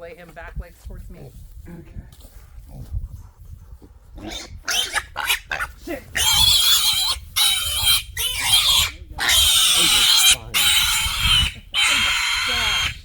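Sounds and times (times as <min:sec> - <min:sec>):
piglet squealing: 0:04.3 - 0:13.0.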